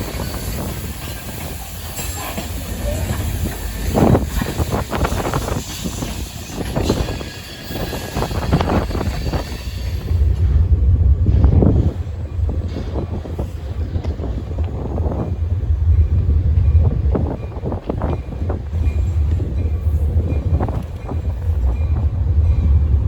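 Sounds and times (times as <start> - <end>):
freight train cars rolling past: 0.0 - 23.0.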